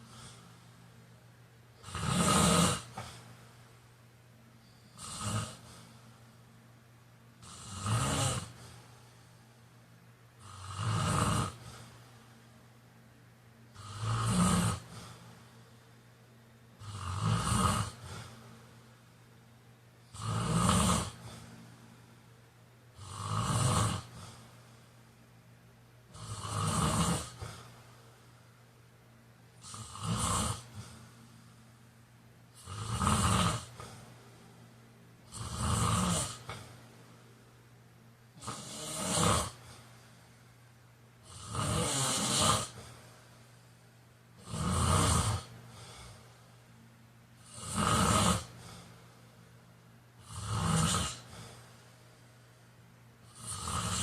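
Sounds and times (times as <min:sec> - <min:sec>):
man snoring: 0:01.8 - 0:03.3, 0:05.0 - 0:05.9, 0:07.4 - 0:08.8, 0:10.4 - 0:12.0, 0:13.7 - 0:15.4, 0:16.8 - 0:18.6, 0:20.1 - 0:21.5, 0:23.0 - 0:24.5, 0:26.1 - 0:27.7, 0:29.6 - 0:31.1, 0:32.6 - 0:34.1, 0:35.3 - 0:36.7, 0:38.3 - 0:39.8, 0:41.2 - 0:43.0, 0:44.4 - 0:46.2, 0:47.4 - 0:48.9, 0:50.2 - 0:51.7, 0:53.2 - 0:54.0.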